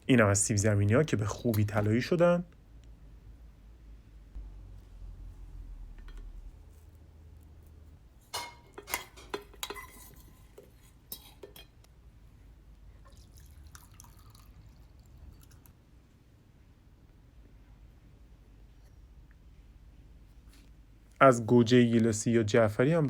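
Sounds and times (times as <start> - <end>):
dishes and utensils clinking: 8.2 - 11.8.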